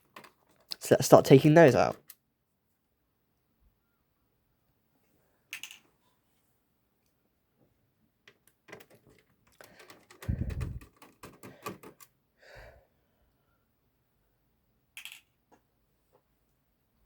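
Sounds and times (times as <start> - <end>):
screwdriver clicks and rattles: 8.3 - 12.1, 15.0 - 15.3.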